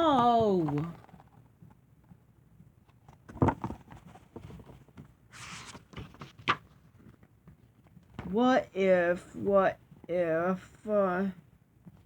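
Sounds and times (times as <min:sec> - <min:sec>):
book page turning rustle: 0:03.0 - 0:08.0.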